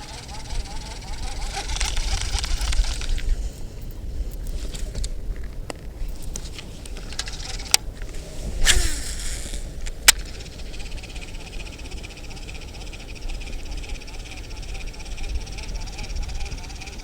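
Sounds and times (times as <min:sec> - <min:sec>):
wind buffeting microphone: 0:00.0 - 0:17.0
sharp clicks: 0:08.6 - 0:10.5.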